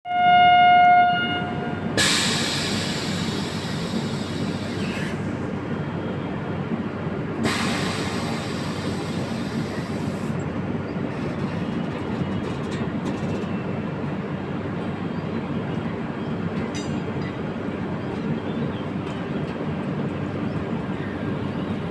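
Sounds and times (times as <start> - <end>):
locomotive horn blast: 0.0 - 3.2
train rumbling: 0.1 - 21.9
loud hiss: 2.0 - 5.4, 7.4 - 10.3.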